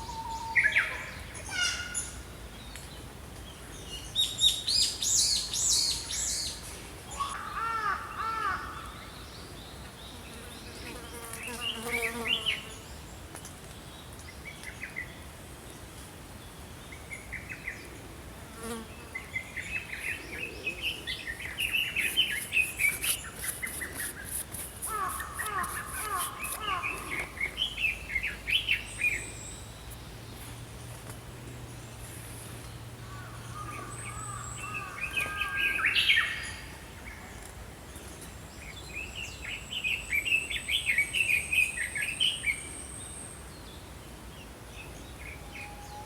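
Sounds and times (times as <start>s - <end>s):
songbirds chirping: 0.0s - 46.0s.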